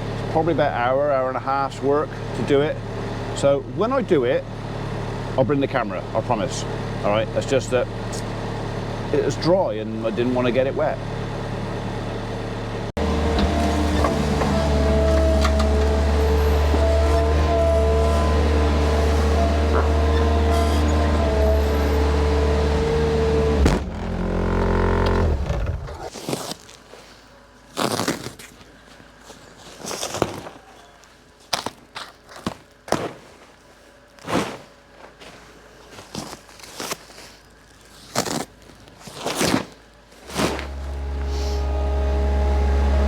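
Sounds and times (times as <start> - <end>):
tractor engine running: 0.0 - 26.1, 39.9 - 43.0.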